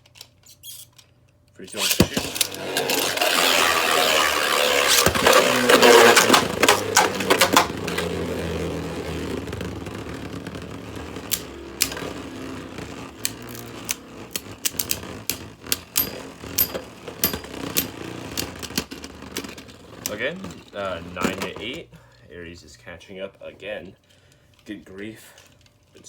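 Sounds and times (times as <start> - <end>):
spinning top whir: 1.7 - 21.6
spinning tops clashing: 1.8 - 8.6, 11.1 - 18.9
tops knocking sharp clicks: 1.8 - 19.0.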